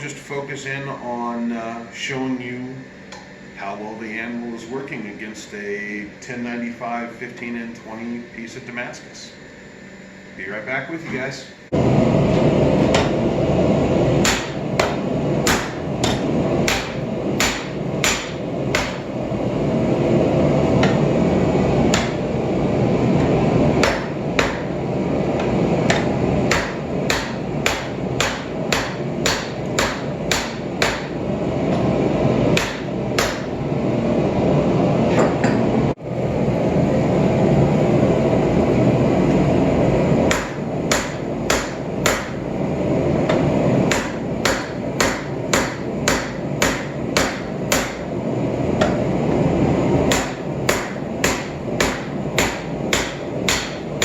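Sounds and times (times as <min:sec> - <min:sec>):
hammer ringing on hot steel: 0:14.2 - 0:19.1, 0:21.8 - 0:22.4, 0:23.2 - 0:24.8, 0:25.4 - 0:31.2, 0:32.6 - 0:33.6, 0:40.3 - 0:42.4, 0:43.3 - 0:48.1, 0:50.1 - 0:54.0.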